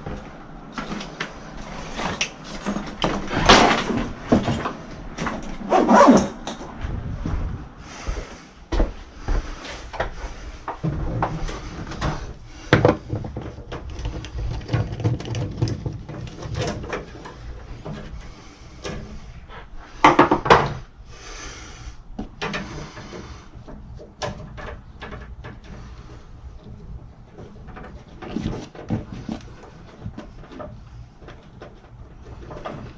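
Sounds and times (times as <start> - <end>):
tools clattering: 0.1 - 6.8
tools knocking and scraping tubing: 9.9 - 20.9, 22.1 - 32.9.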